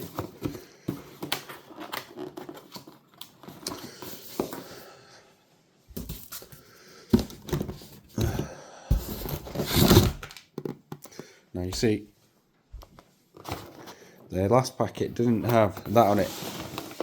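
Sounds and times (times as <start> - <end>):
packaging crinkling and rustling: 15.4 - 17.0.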